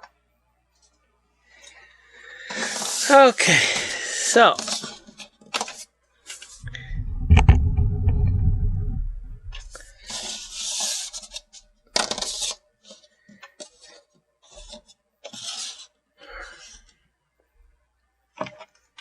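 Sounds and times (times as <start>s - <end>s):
low rumbling bump with knock: 6.6s - 10.2s.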